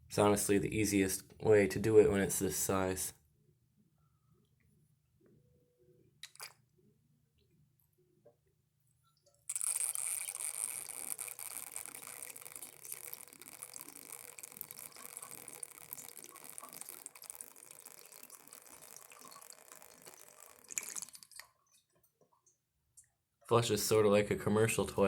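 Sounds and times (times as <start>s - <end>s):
model toilet flushing: 9.5s - 21.3s
water gush: 9.5s - 21.4s.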